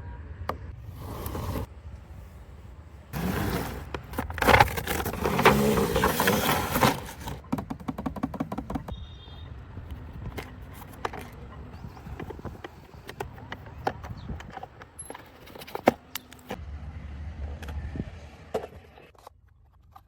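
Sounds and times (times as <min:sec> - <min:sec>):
packaging scraping and rustling: 0:00.9 - 0:01.7, 0:03.1 - 0:08.9.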